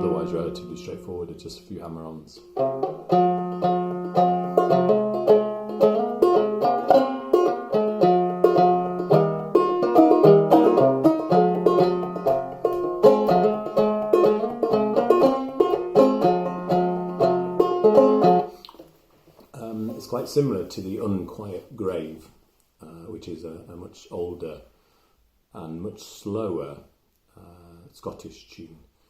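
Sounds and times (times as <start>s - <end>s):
banjo plucked melody: 0.0s - 18.7s.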